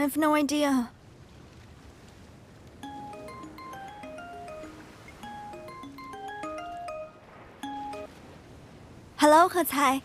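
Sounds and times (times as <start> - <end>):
glockenspiel-like background melody: 2.8 - 8.2.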